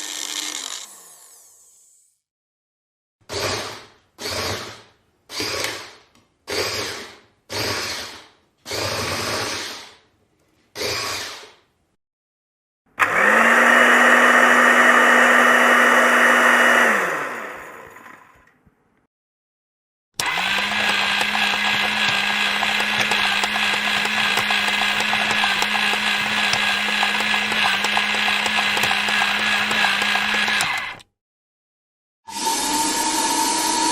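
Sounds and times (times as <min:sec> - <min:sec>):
electric blender running: 0:13.0 - 0:18.4, 0:20.2 - 0:31.1, 0:32.3 - 0:33.9.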